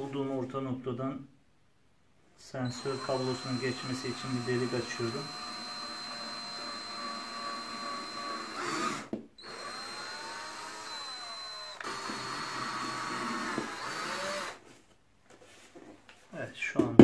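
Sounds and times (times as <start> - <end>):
electric drill boring through foam: 2.6 - 14.6.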